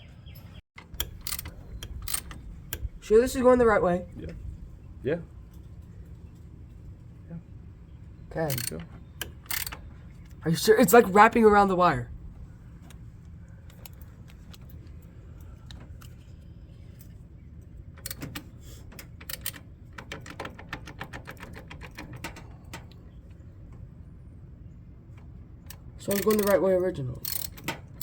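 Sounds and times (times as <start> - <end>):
ratchet wrench clicking: 0.8 - 2.9, 8.5 - 9.8, 18.0 - 22.3, 25.7 - 26.6, 27.2 - 28.0.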